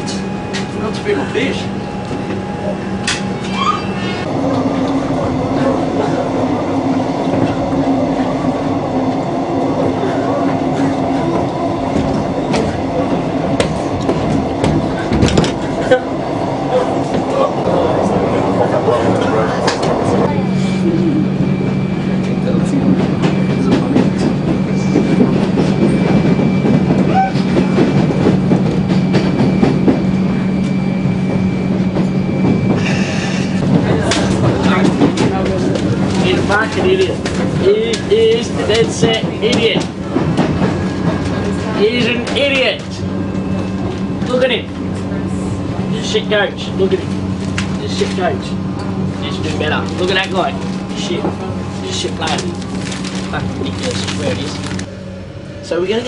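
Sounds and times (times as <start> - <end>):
passenger train rumbling: 0.0 - 56.0.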